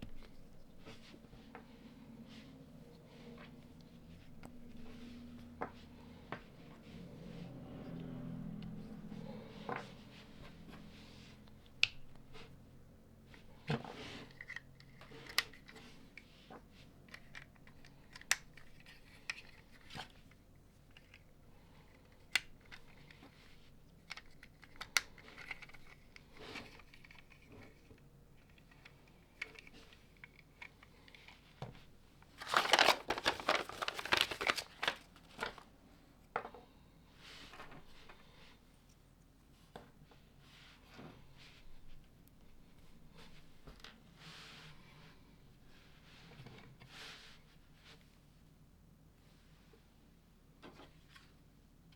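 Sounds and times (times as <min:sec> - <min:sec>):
rustling and clicking: 0:17.1 - 0:35.7
plastic pieces clicking together: 0:24.0 - 0:27.8.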